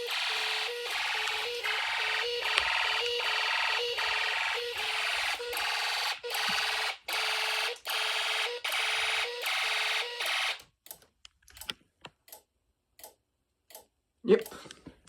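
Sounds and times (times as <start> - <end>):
pulsing electronic alarm tone: 0.0 - 10.6.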